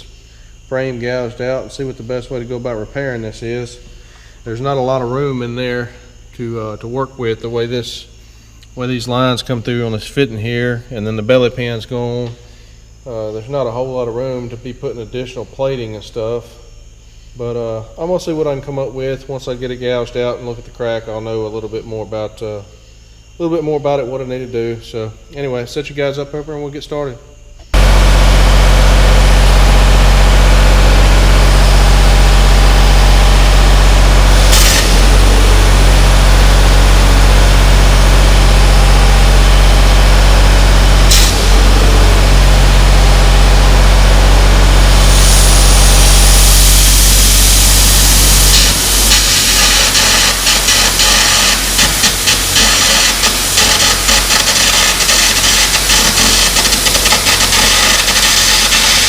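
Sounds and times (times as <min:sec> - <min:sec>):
machine humming: 0:27.4 - 0:59.0
electric arc crackling: 0:27.7 - 0:59.0
compressed air hissing: 0:33.6 - 0:38.1, 0:40.9 - 0:59.0.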